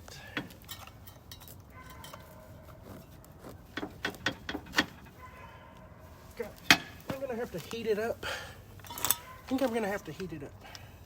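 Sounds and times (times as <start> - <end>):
light metal clicks and clinks: 0.3 - 2.4, 8.8 - 10.9.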